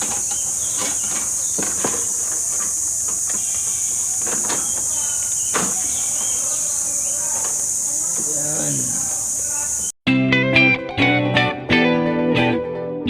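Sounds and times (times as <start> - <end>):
air conditioner parts clicking: 0.0 - 9.7
insect chorus: 0.0 - 10.0.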